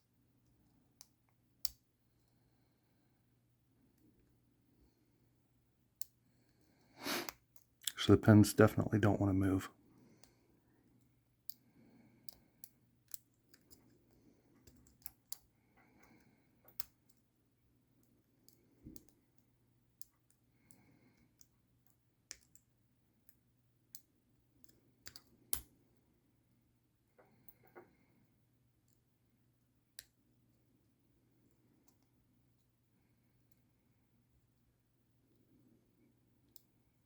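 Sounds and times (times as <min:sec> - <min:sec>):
lock pick clicks and ticks: 0:23.3 - 0:25.7.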